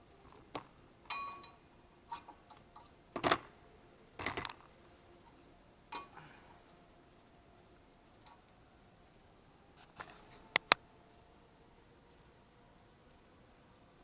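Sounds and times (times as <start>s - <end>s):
metal parts clinking and knocking: 0.3s - 3.5s, 4.2s - 4.7s.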